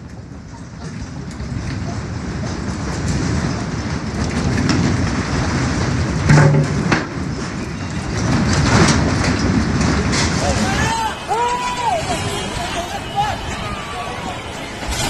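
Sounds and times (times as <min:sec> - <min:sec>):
earthquake rumble: 0:00.0 - 0:15.0
rattling and clattering: 0:00.8 - 0:10.7.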